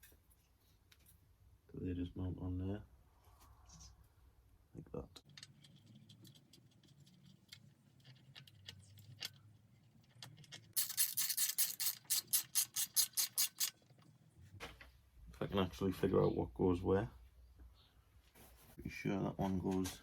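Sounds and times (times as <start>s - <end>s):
faint clicks of parts handled: 0.0s - 1.2s.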